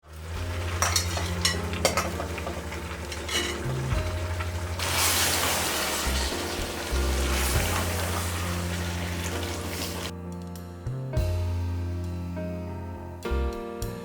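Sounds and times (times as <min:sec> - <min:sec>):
background music: 0:00.0 - 0:14.0
food sizzling in frying pan: 0:00.1 - 0:10.1
utensil clinking against pan: 0:00.6 - 0:04.5.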